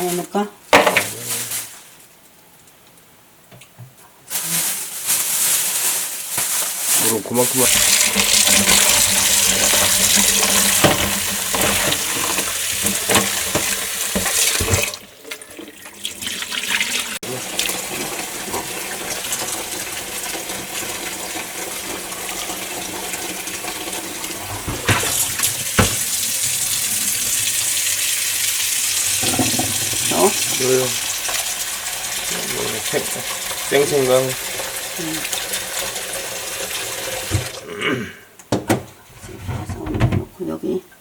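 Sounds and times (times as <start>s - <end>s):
water running from kitchen tap: 7.0s - 37.6s.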